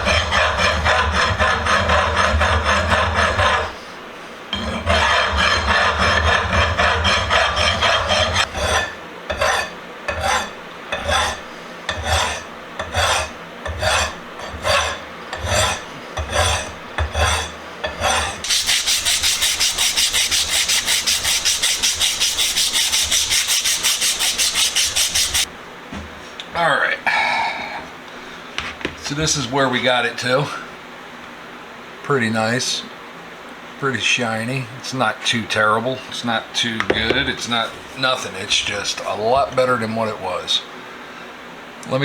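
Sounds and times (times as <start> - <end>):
file rasping on steel: 0.0 - 3.8, 4.5 - 25.5.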